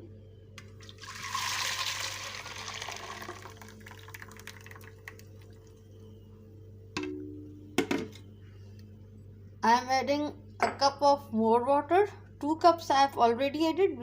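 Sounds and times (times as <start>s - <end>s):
liquid pouring into a pan: 0.6s - 5.8s.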